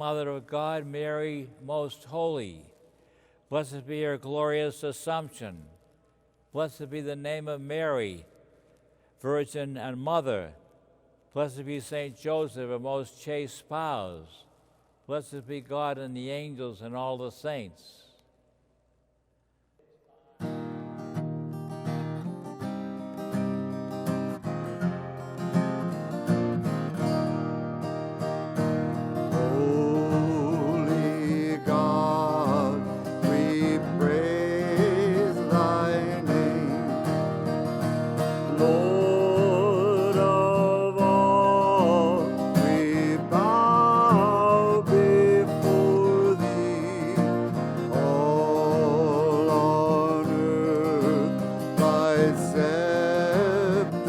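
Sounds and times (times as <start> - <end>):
acoustic guitar strumming: 20.4 - 54.0
person singing with vibrato: 28.9 - 54.0.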